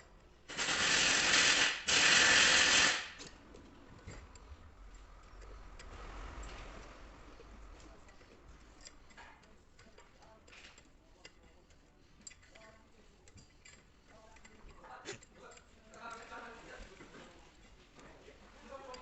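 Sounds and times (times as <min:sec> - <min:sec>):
powered ratchet spinning nut: 0:00.5 - 0:03.3
faint clicks of parts handled: 0:03.2 - 0:18.2.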